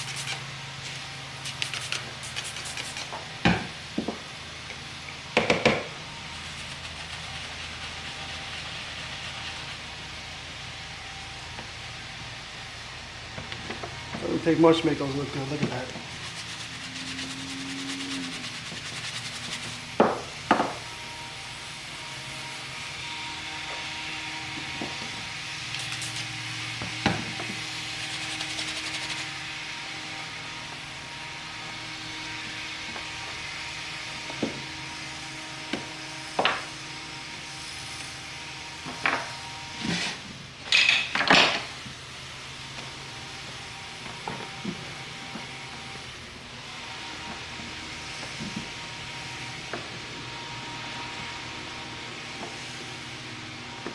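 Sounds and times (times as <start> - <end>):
brush scrubbing leather: 0.0 - 0.5, 1.5 - 3.1, 6.3 - 10.0, 14.6 - 21.1
steady hiss: 0.0 - 3.2, 14.0 - 40.2
tools knocking on wooden bench: 3.4 - 4.2, 5.4 - 5.9, 20.0 - 20.8, 36.4 - 36.6
tools clattering and scraping: 38.9 - 41.8.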